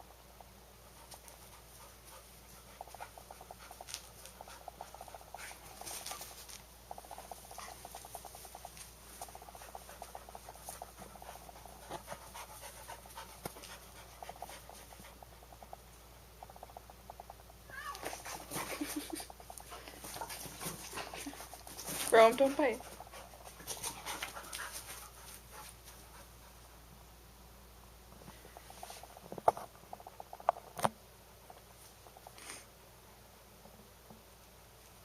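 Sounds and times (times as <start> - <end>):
dog panting: 0.8 - 15.8, 18.1 - 26.6.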